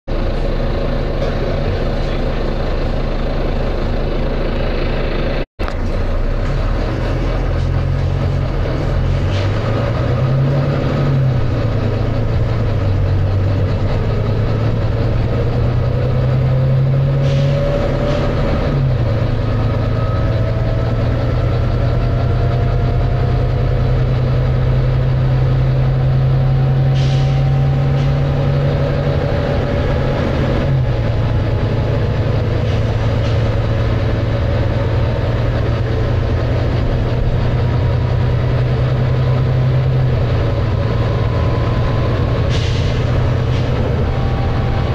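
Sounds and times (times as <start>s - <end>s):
bus diesel engine working hard: 0.1s - 44.9s
rising whine: 7.8s - 32.6s, 35.7s - 44.9s
air brake hisses: 26.9s - 27.6s, 42.5s - 43.8s.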